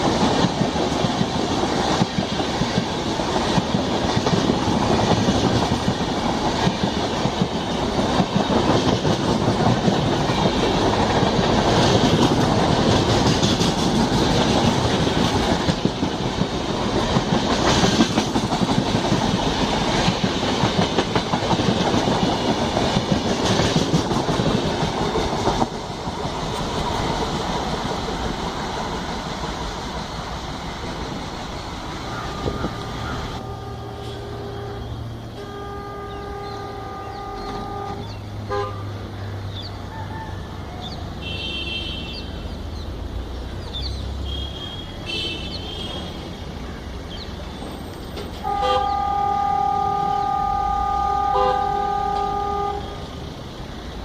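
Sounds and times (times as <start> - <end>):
train wheels clattering over rails: 0.0 - 33.4.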